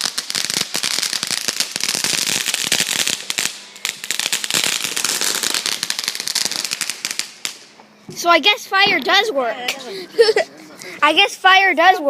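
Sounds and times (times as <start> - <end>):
firework crackling pops: 0.0 - 7.8.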